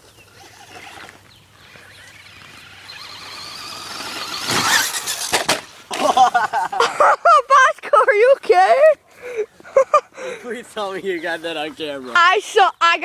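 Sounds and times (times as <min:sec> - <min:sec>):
electric rc truck motor whining: 0:00.2 - 0:05.8.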